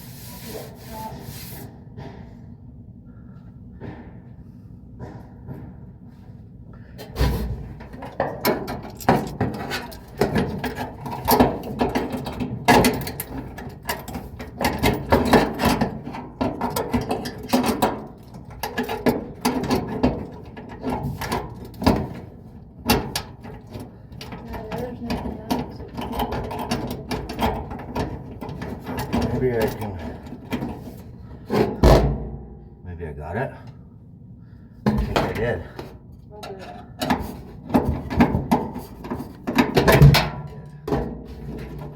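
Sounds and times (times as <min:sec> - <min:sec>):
metal parts clicking and rattling: 0:07.8 - 0:31.8.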